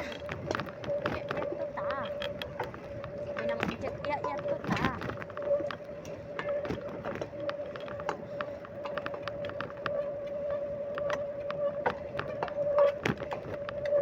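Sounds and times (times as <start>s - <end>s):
bicycle clicks and rattles: 0.0s - 14.0s
bicycle whine: 0.0s - 14.0s.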